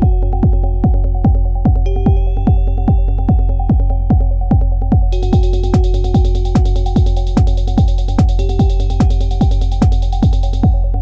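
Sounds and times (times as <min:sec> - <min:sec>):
kick drum: 0:00.0 - 0:11.0
low bass and synth tones: 0:00.0 - 0:11.0
hi-hat ticks: 0:05.2 - 0:11.0.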